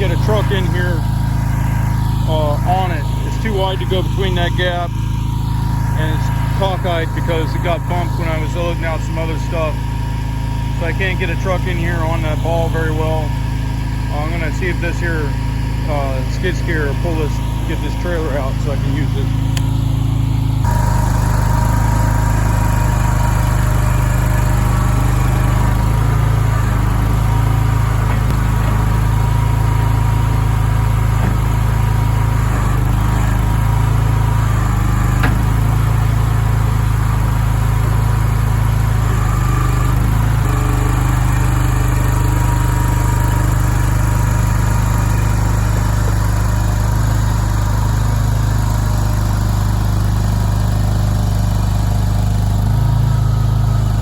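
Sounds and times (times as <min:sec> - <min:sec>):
skid steer engine running: 0:00.0 - 0:54.0.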